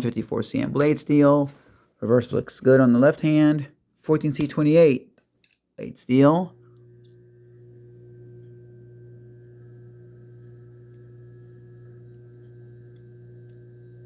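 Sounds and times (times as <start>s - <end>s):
faint steady hum: 6.0s - 14.0s.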